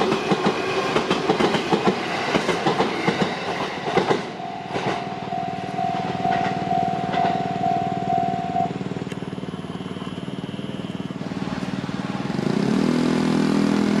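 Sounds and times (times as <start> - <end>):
railroad crossing bell ringing: 4.2 - 11.2
vehicle engines running: 4.2 - 14.0
engine revving: 4.4 - 14.0.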